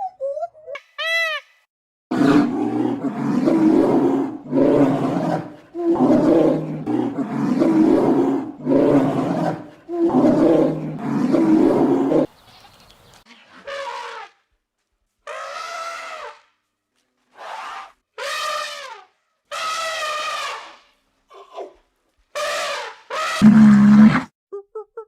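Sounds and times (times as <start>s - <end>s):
large animal roaring: 2.1s - 12.3s, 23.4s - 24.3s.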